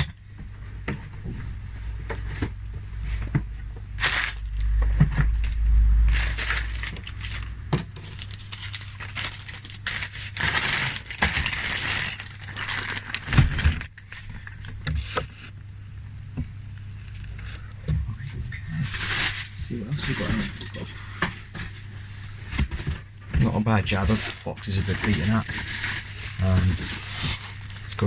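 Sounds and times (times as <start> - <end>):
cardboard and plastic rustling: 0.0 - 15.7, 16.4 - 28.0
steady low hum: 0.0 - 28.0
low rumble: 1.4 - 9.8.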